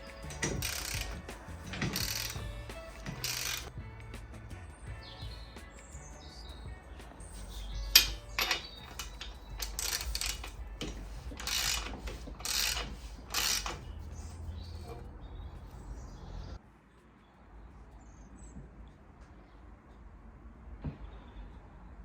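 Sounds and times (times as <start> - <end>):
short rasping bursts: 0.0 - 14.8
mechanical clicking: 7.9 - 13.8.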